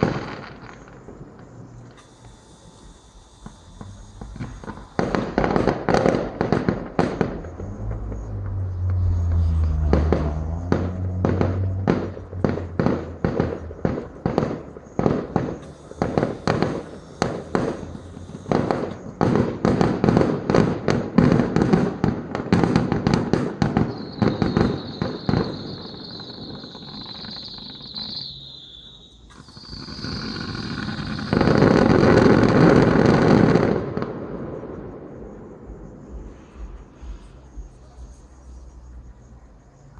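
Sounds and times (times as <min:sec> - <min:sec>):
dense fireworks burst: 0:00.0 - 0:38.2
fireworks bangs: 0:00.0 - 0:38.2
high wavering whistle: 0:23.9 - 0:29.8.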